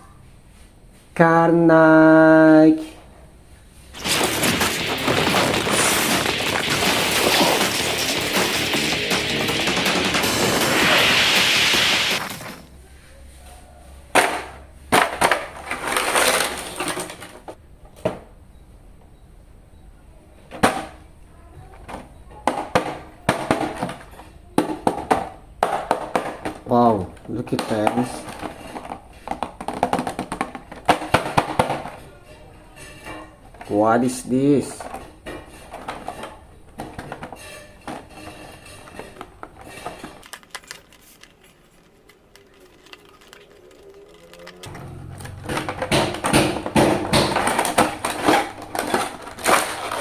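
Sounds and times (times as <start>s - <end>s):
hard plastic clicking and rustling: 38.8s - 50.0s.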